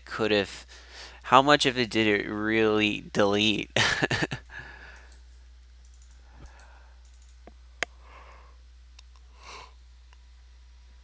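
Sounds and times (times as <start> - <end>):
low electrical hum: 0.0 - 11.0
soft breaths: 0.6 - 1.3, 4.5 - 5.5, 6.2 - 7.2, 7.8 - 10.4
faint ticks: 5.8 - 8.0.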